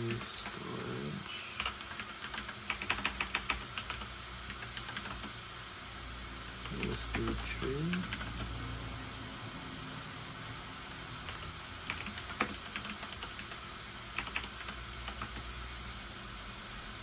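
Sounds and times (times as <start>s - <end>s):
computer keyboard typing: 0.0s - 0.6s, 1.6s - 5.4s, 6.6s - 8.5s, 10.9s - 15.6s
steady low hum: 0.0s - 17.0s.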